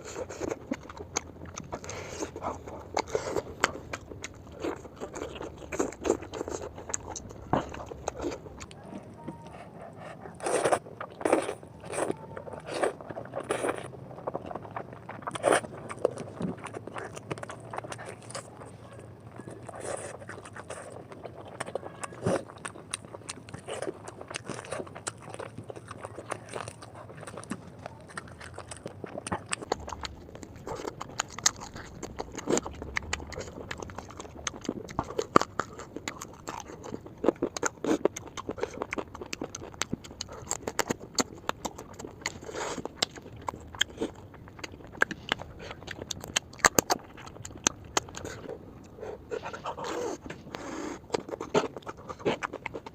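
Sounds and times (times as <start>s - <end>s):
wet chewing noodles: 0.0s - 52.9s.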